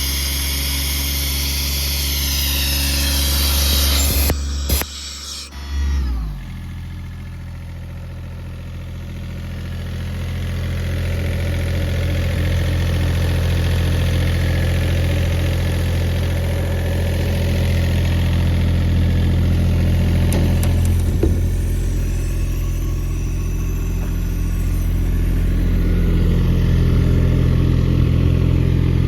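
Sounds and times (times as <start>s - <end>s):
diesel compressor engine running: 0.0s - 29.0s.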